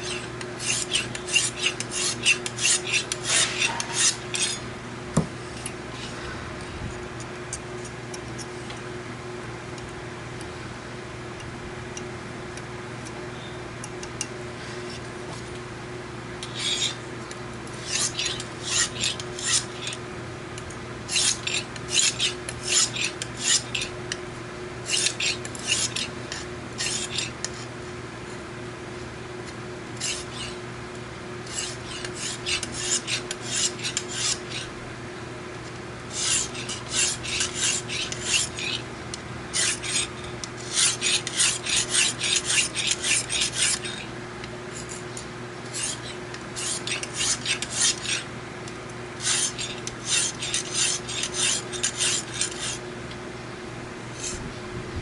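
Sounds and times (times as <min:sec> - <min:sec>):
hone scraping knife edge: 0:00.0 - 0:04.7, 0:05.6 - 0:06.4, 0:16.4 - 0:20.0, 0:21.1 - 0:24.2, 0:24.8 - 0:27.8, 0:30.0 - 0:30.6, 0:31.4 - 0:34.8, 0:36.1 - 0:38.9, 0:39.5 - 0:44.1, 0:44.7 - 0:48.3, 0:49.2 - 0:52.8, 0:54.1 - 0:54.5
steady low hum: 0:00.0 - 0:55.0.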